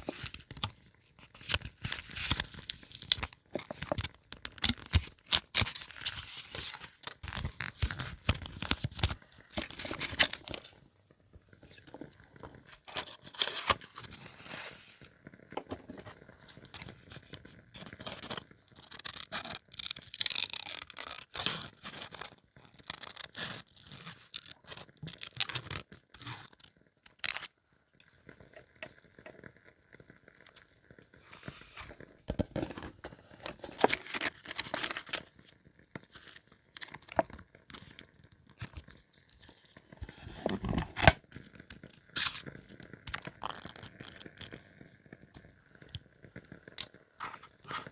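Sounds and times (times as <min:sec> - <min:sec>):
paper crinkling and rustling: 0:00.0 - 0:10.8, 0:11.7 - 0:15.0, 0:15.6 - 0:26.6, 0:31.2 - 0:35.4, 0:36.1 - 0:41.2, 0:47.2 - 0:47.9.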